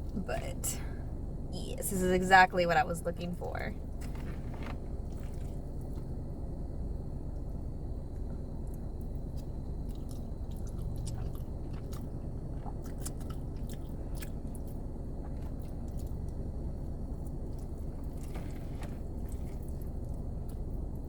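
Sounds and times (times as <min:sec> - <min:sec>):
chewing with mouth smacks: 0:04.0 - 0:06.2, 0:08.2 - 0:21.0.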